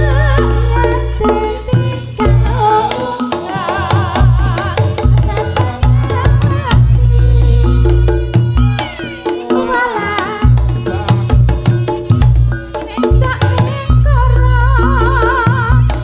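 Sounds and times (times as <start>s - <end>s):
deep bass notes: 0.0s - 2.7s, 6.6s - 8.8s
hand drumming: 0.0s - 16.0s
wavering high melody: 0.0s - 16.0s.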